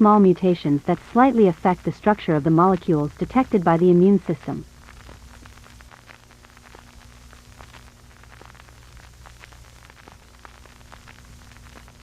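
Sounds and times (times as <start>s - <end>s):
low steady hum: 0.0s - 12.0s
static crackling clicks: 0.0s - 12.0s.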